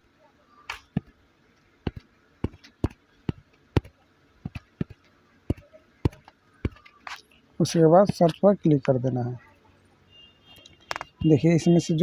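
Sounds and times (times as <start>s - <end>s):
fingertips tapping a touchscreen: 1.9s - 8.9s.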